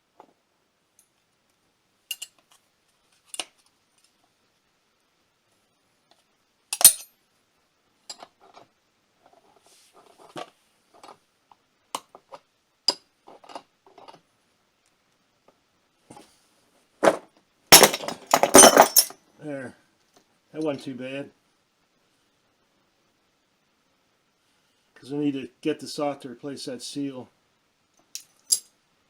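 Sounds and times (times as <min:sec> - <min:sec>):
metal tools clinking on metal: 0:02.1 - 0:02.4, 0:06.8 - 0:07.1, 0:17.7 - 0:19.2.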